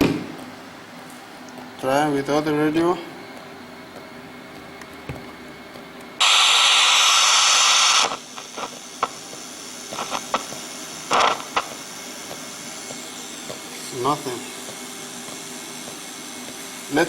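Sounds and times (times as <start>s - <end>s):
radio clicks: 6.2s - 9.2s, 9.9s - 11.8s
radio static hiss: 6.2s - 14.7s, 16.8s - 17.0s.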